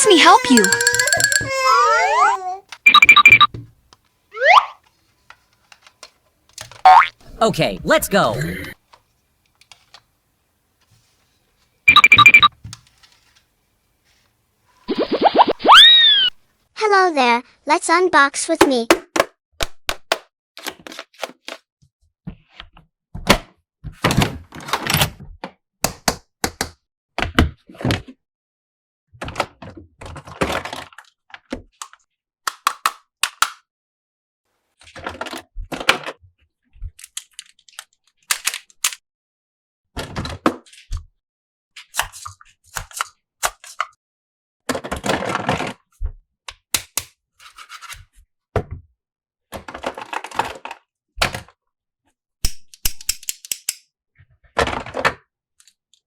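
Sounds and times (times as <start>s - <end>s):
toy pieces clicking and knocking: 0.1s - 1.8s, 2.9s - 3.5s, 11.9s - 12.5s.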